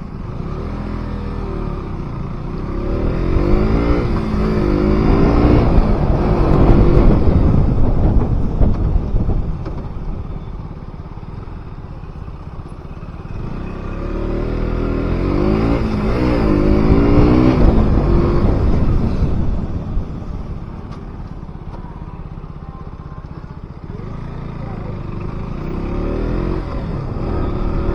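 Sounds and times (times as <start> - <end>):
motorcycle engine accelerating: 0.0 - 27.9.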